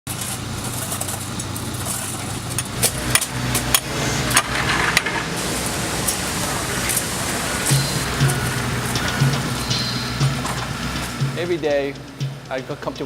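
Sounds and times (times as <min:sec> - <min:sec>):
construction machinery engine running: 0:00.0 - 0:13.0.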